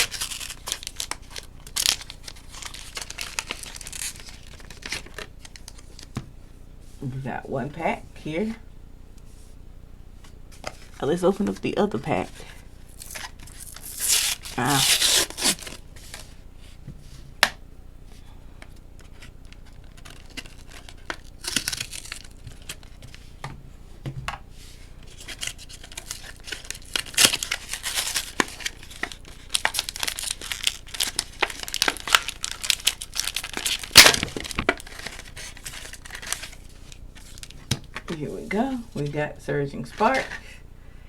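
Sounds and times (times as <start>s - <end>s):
plastic packaging tearing and crinkling: 0.0s - 6.1s, 12.9s - 16.2s, 19.0s - 23.1s, 25.1s - 38.0s.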